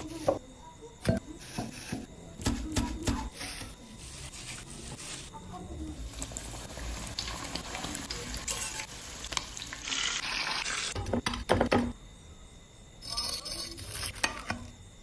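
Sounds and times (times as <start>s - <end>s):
chicken sizzling in hot oil: 5.9s - 11.0s.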